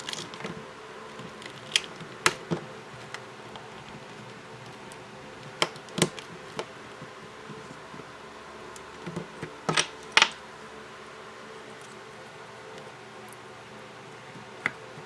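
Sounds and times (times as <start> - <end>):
plastic cover clicking and crackling: 0.0 - 6.7
faint hum: 0.0 - 15.0.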